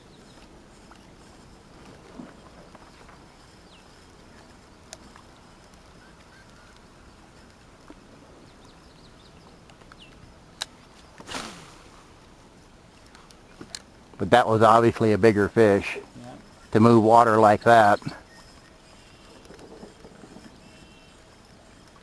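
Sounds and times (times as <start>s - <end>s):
faint bird chirps: 2.9s - 7.2s, 17.7s - 21.8s.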